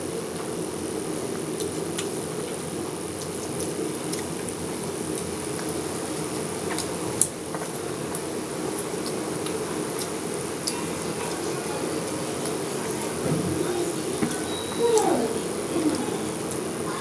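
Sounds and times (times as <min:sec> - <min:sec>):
chewing: 0:01.6 - 0:11.4.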